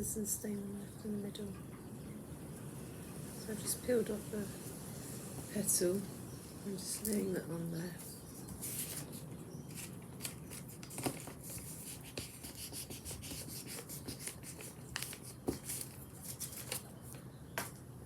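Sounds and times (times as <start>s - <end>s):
spoon rubbing on paper: 8.5s - 16.8s.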